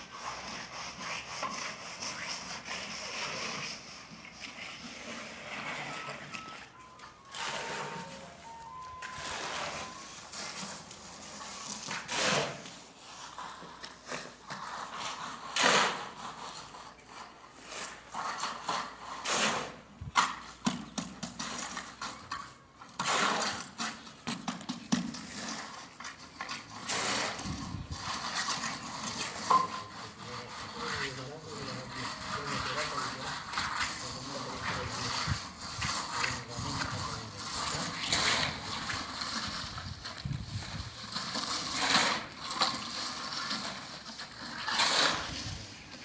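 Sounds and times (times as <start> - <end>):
scraping and knocking: 1.0 - 46.0.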